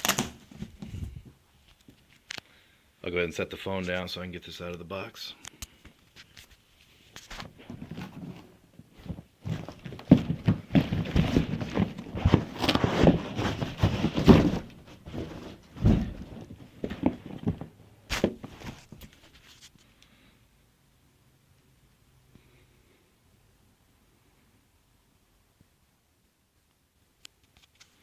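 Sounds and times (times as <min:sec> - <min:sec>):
cardboard box rustling and scraping: 0:00.3 - 0:01.3, 0:07.2 - 0:19.7.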